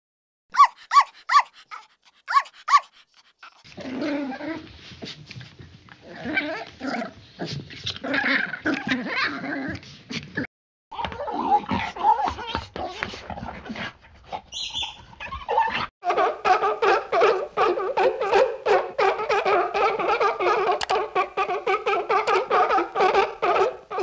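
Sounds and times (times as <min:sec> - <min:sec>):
animal growling and snarling: 0:03.0 - 0:04.6, 0:06.0 - 0:15.9.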